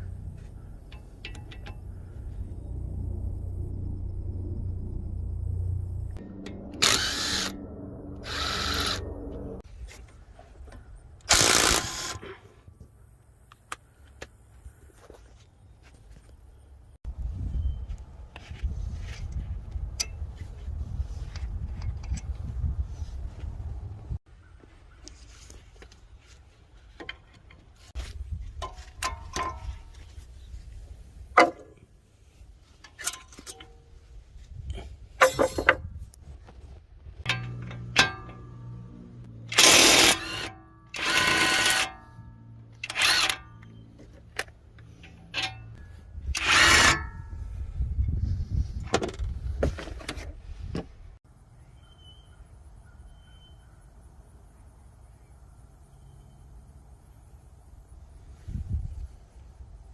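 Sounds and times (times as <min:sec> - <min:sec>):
low steady hum: 0:00.0 - 0:09.6, 0:37.3 - 0:43.6
tools clinking and knocking: 0:00.3 - 0:02.1, 0:28.6 - 0:30.0, 0:35.2 - 0:35.8, 0:37.3 - 0:38.7, 0:42.8 - 0:45.8
power tool bursts: 0:06.8 - 0:07.6, 0:08.2 - 0:09.0, 0:11.3 - 0:12.3, 0:39.5 - 0:42.0, 0:42.8 - 0:43.4, 0:46.4 - 0:47.0.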